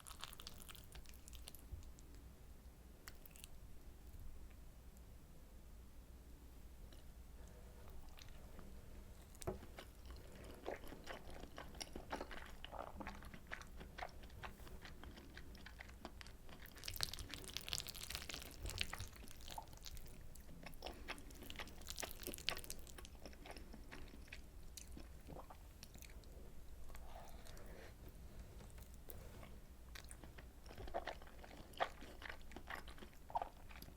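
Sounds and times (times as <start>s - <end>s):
close chewing with mouth clicks: 0.0s - 2.0s, 9.2s - 27.6s, 29.9s - 33.9s.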